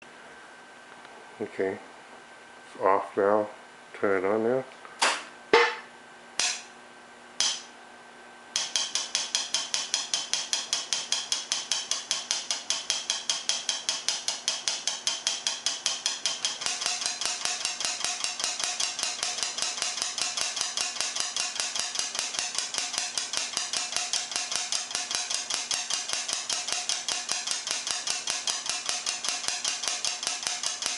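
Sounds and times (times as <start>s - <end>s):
air dryer clicking: 7.4s - 7.7s, 8.6s - 30.9s.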